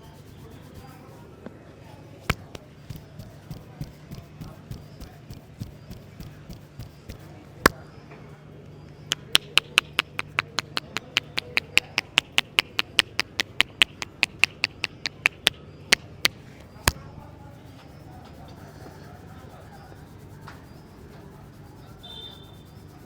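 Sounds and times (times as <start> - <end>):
hands slapping head: 2.3 - 7.8, 9.1 - 17.0.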